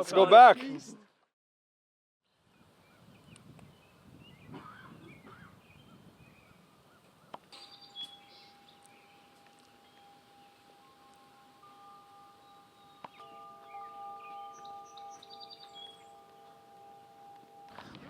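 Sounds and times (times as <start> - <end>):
faint bird chirps: 2.2 - 16.8
chime-like ringing tone: 7.5 - 18.0.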